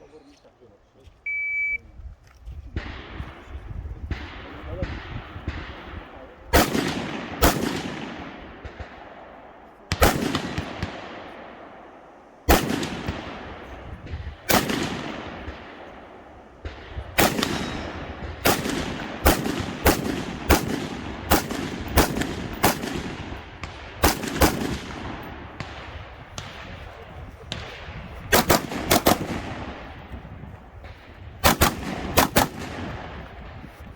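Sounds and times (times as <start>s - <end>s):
rifle shots with rolling echo: 2.7s - 33.9s.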